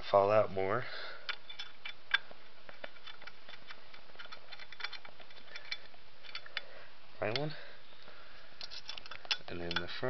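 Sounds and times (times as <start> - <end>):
faint steady hiss: 0.0 - 10.0
allen wrench turning metal screw: 1.3 - 6.6, 8.6 - 10.0.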